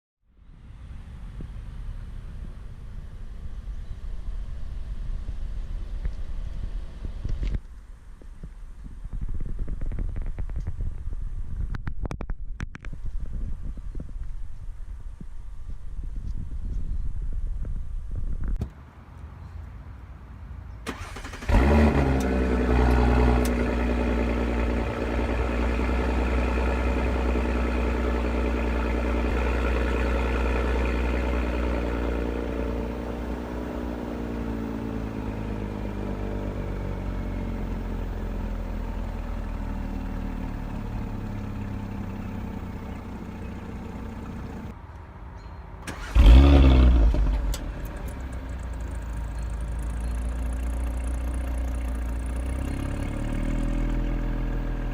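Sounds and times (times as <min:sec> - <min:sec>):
car engine starting and idling: 0:20.8 - 0:44.8, 0:45.8 - 0:54.9
engine revving: 0:20.9 - 0:44.7, 0:45.9 - 0:54.9.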